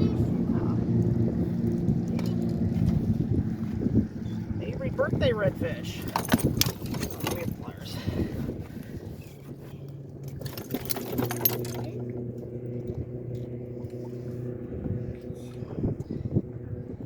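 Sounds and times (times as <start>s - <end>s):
low motor hum: 0.0s - 17.0s
metal clattering and jangling: 5.8s - 8.0s, 10.2s - 13.6s.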